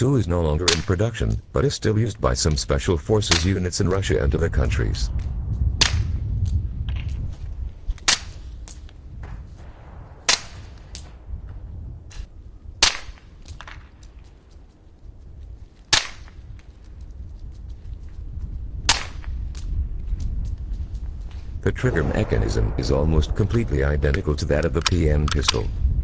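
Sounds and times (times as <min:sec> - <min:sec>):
low background rumble: 0:00.0 - 0:26.0
pistol shots cracking: 0:09.7 - 0:11.2, 0:12.8 - 0:13.8, 0:21.9 - 0:25.7.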